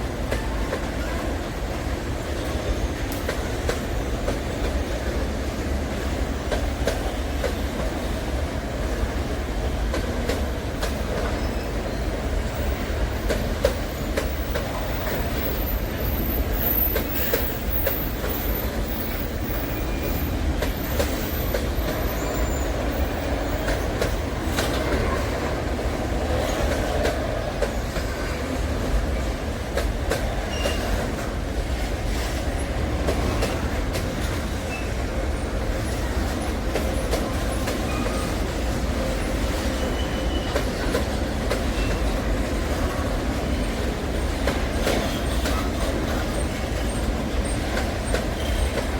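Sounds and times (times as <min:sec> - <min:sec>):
train wheels clacking on rails: 0:00.0 - 0:48.9
faint wheel squeals: 0:30.5 - 0:31.0.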